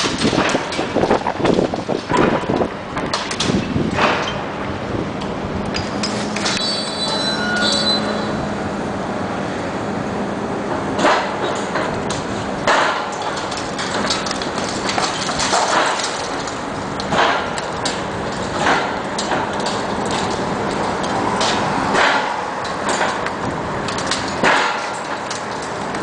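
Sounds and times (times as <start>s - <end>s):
bricks crashing and clattering: 0.0s - 4.2s, 12.7s - 25.7s
steady machine hum: 2.4s - 26.0s.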